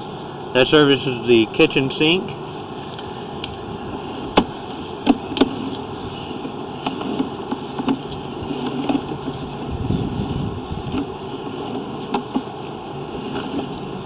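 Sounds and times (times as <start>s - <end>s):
steady mechanical hum: 0.0s - 14.0s
sharp clicks and knocks: 6.4s - 9.4s, 11.7s - 12.5s.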